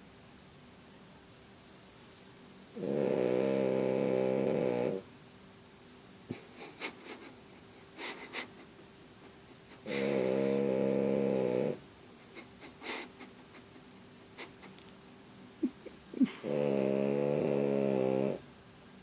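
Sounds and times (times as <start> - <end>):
pet snoring: 2.7 - 5.0, 9.8 - 11.8, 16.2 - 18.4
faint snuffles: 9.8 - 11.8.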